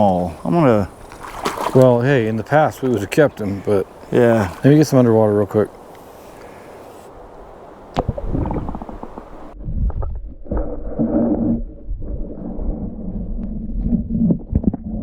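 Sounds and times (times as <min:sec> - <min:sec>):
underwater rumbling and sloshing: 0:07.2 - 0:15.0
underwater knocks: 0:07.9 - 0:10.2.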